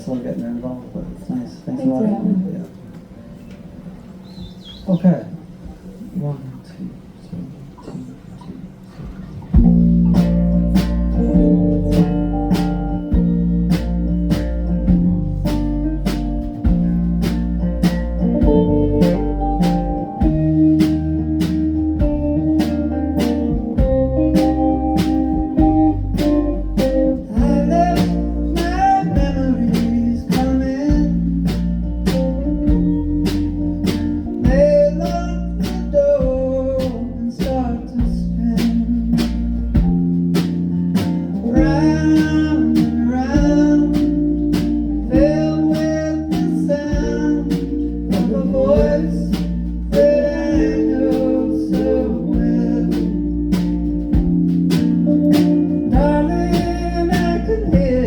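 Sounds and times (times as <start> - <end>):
live band playing blues: 8.4 - 58.0
person singing: 27.2 - 31.8, 41.3 - 53.8, 55.9 - 58.0.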